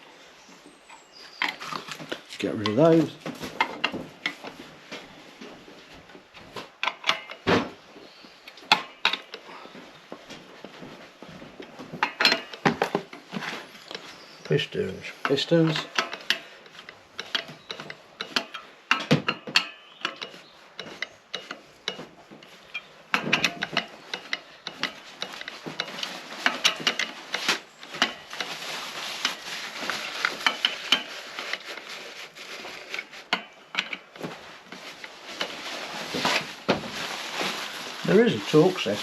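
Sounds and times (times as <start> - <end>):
rubbing and rustling: 1.2 - 39.0
metal tools clicking and knocking: 12.0 - 13.0, 15.2 - 28.2.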